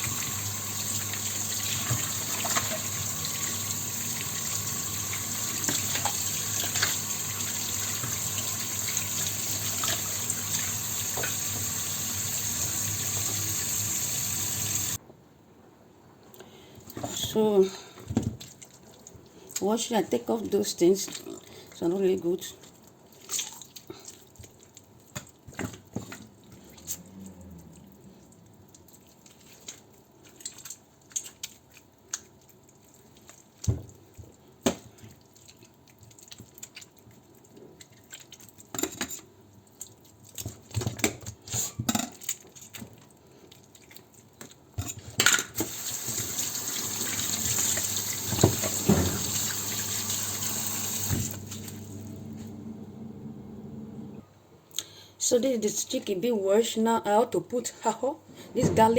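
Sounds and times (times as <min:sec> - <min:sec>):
water splashing in a bowl: 0:00.0 - 0:13.7, 0:22.6 - 0:41.2, 0:45.5 - 0:51.9
water running: 0:00.0 - 0:15.0, 0:45.6 - 0:54.2.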